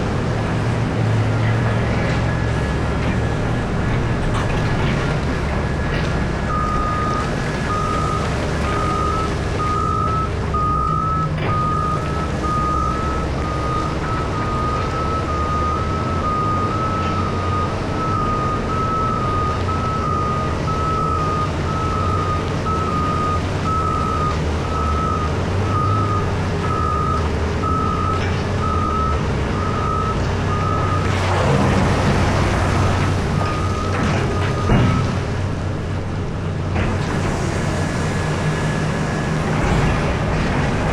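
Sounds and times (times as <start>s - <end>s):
large diesel engines droning: 0.0s - 40.9s
reversing alarm beeping: 5.4s - 35.3s.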